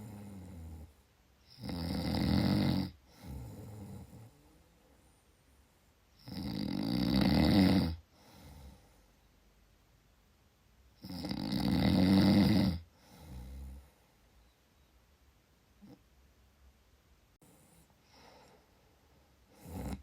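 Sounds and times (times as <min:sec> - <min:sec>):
person snoring: 0:01.5 - 0:04.6, 0:06.2 - 0:08.9, 0:11.0 - 0:13.9, 0:19.5 - 0:20.0.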